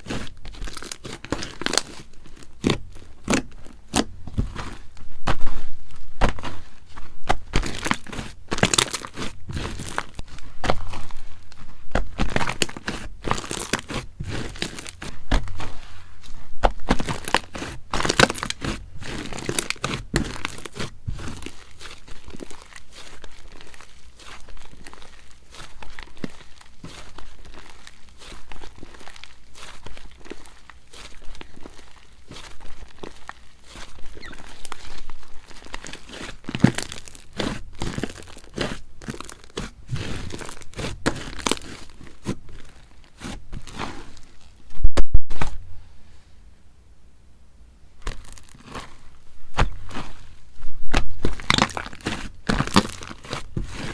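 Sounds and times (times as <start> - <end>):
slime crackling and popping: 0.0 - 44.6, 48.0 - 53.9
slime squeak: 31.7 - 38.6.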